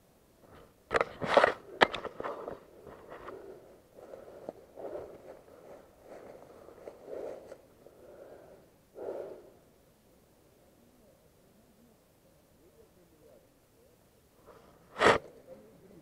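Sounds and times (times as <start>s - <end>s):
rustling and scuffing footsteps: 2.1s - 7.6s.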